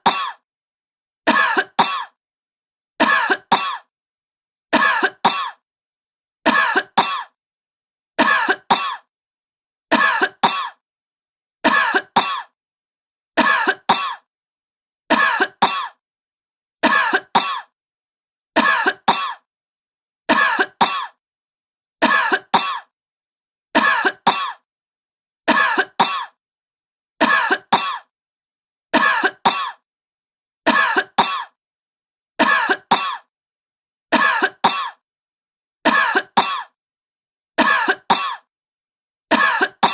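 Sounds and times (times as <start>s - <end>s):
woman coughing: 0.0s - 0.4s, 1.3s - 2.2s, 3.0s - 3.9s, 4.8s - 5.6s, 6.5s - 7.4s, 8.2s - 9.1s, 10.0s - 10.8s, 11.7s - 12.6s, 13.4s - 14.3s, 15.1s - 16.0s, 16.8s - 17.8s, 18.6s - 19.5s, 20.3s - 21.2s, 22.0s - 22.9s, 23.8s - 24.7s, 25.5s - 26.4s, 27.2s - 28.1s, 29.0s - 29.8s, 30.7s - 31.6s, 32.4s - 33.3s, 34.2s - 35.0s, 35.9s - 36.8s, 37.6s - 38.5s, 39.3s - 39.9s.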